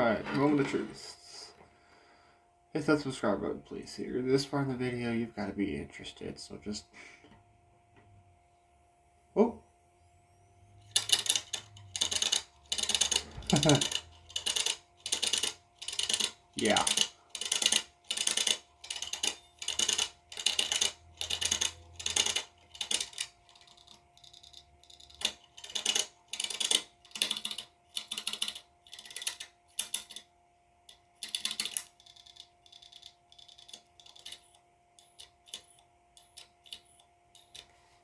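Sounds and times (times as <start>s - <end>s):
faint steady hum: 0.0s - 38.0s
hard drive arm chattering and clicking: 10.9s - 37.7s.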